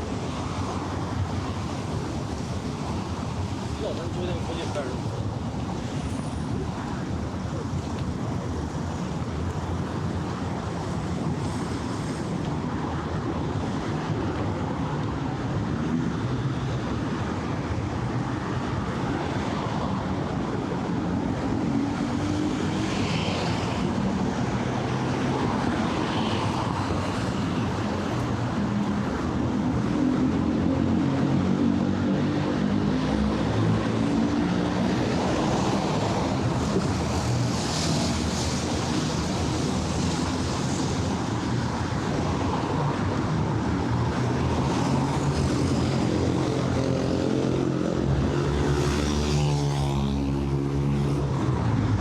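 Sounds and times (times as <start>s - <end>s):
city traffic noise: 0.0s - 52.0s.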